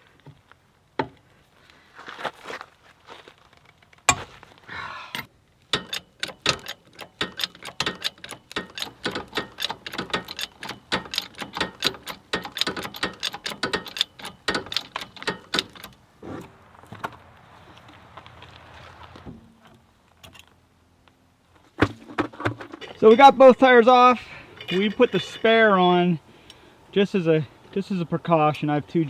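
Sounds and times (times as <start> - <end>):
sharp knock: 4.1 - 4.4
ratchet wrench clicking: 5.2 - 16.0.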